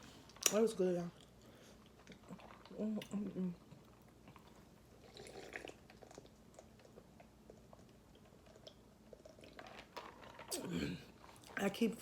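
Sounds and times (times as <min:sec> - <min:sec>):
chewing and mouth sounds: 0:01.2 - 0:10.5.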